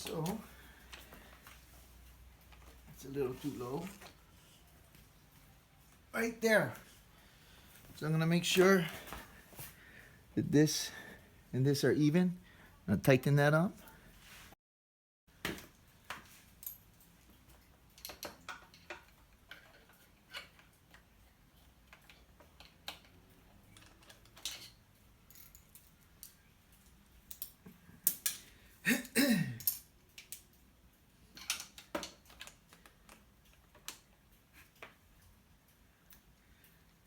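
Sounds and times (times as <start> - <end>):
metallic clicks of hand tools: 25.5 - 28.5.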